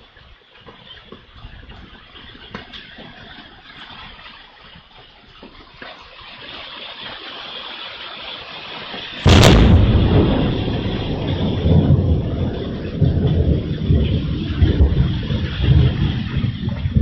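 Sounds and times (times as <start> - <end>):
storm rain hissing: 0.0 - 17.0
thunder crack and rumble: 9.2 - 17.0.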